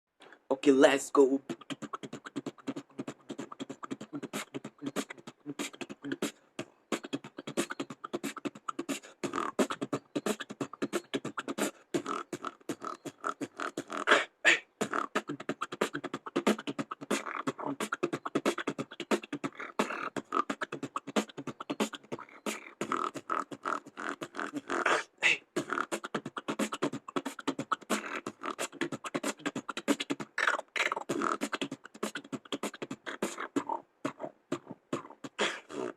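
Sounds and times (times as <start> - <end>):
beatboxing: 0.2 - 35.9.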